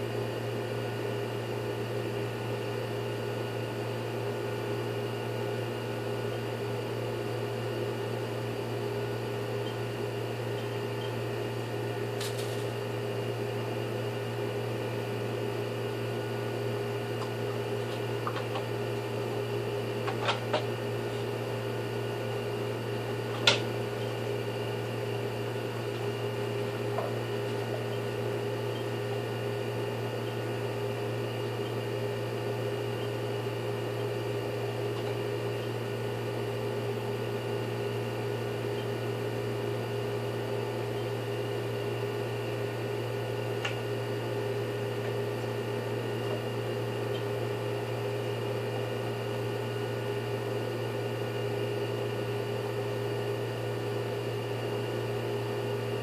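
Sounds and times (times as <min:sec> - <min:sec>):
steady machine hum: 0:00.0 - 0:56.0.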